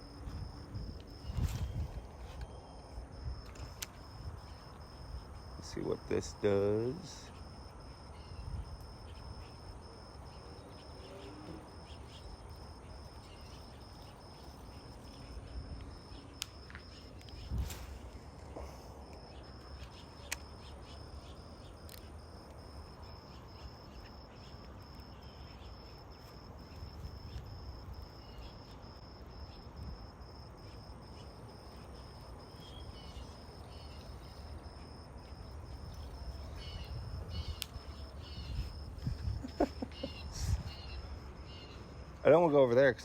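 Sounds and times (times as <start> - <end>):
insect trilling: 0.0 - 43.0
bird chirps: 4.3 - 17.9, 19.3 - 22.1, 28.1 - 28.8, 30.6 - 34.6, 35.2 - 41.9.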